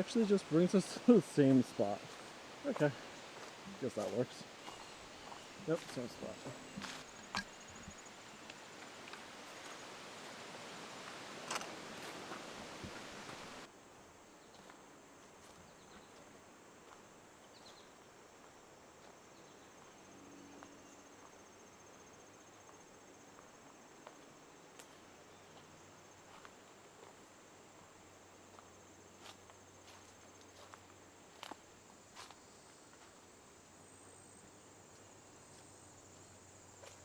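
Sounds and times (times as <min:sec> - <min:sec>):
high-pitched insect trill: 0:00.0 - 0:10.2
rustling hiss with sharp clicks: 0:07.0 - 0:13.7.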